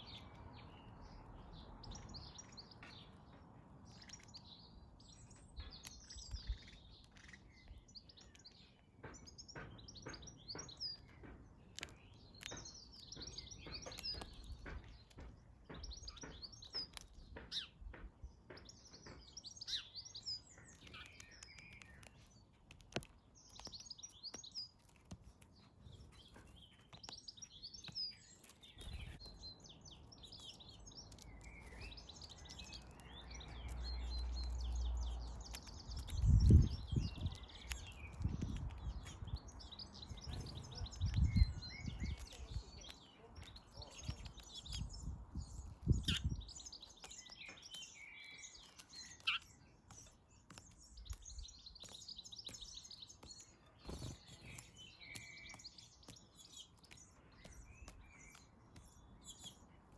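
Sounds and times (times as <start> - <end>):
birds chirping and twittering: 0.0 - 59.9.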